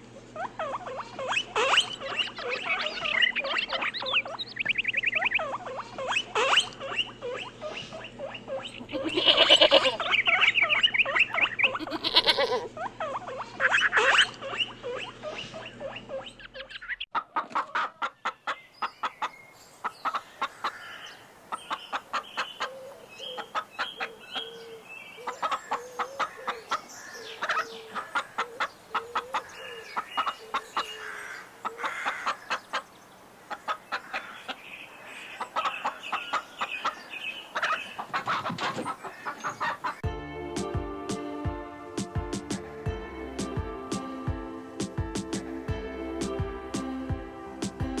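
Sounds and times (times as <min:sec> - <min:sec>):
chickens clucking: 0:00.0 - 0:48.0
small animal squealing: 0:00.4 - 0:17.0.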